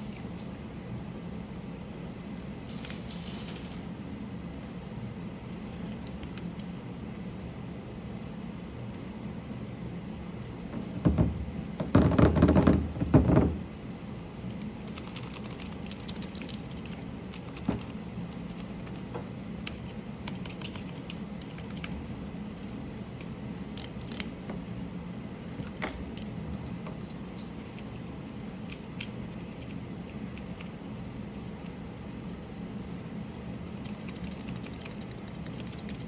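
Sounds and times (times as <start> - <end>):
mechanical keyboard clicking: 14.5 - 19.0, 19.6 - 22.0, 33.8 - 36.0.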